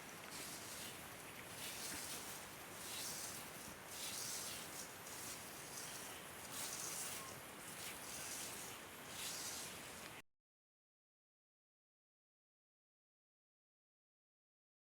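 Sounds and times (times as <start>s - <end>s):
faint hissing swish of stirring: 0.2s - 10.2s.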